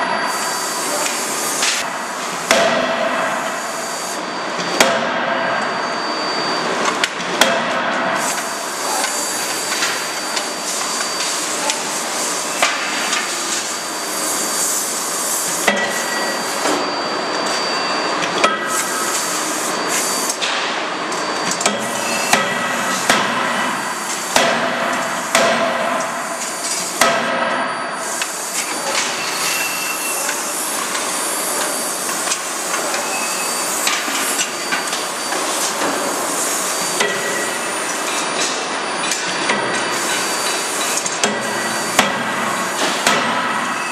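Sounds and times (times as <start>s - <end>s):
hiss of running machinery: 0.0s - 4.7s, 5.4s - 43.9s
hydraulic forging hammer striking: 2.4s - 3.6s, 4.6s - 5.6s, 6.9s - 8.3s, 15.6s - 16.4s, 18.2s - 19.0s, 21.4s - 26.2s, 26.9s - 27.7s, 37.0s - 43.9s.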